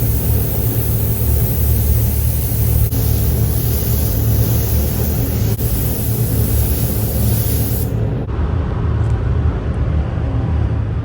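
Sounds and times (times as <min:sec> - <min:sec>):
high hiss: 0:00.0 - 0:08.2
machine low rumble: 0:00.0 - 0:11.0.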